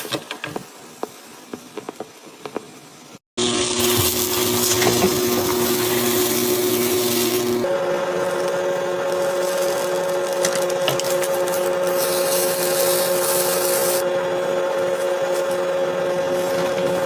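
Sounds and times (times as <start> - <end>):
appliance motor whining: 3.4 - 17.0.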